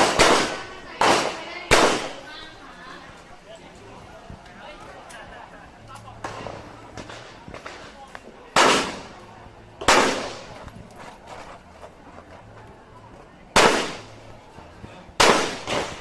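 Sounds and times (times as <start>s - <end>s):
revolver shots with echo: 8.6s - 9.2s, 9.8s - 10.6s, 13.6s - 14.1s, 15.2s - 16.0s.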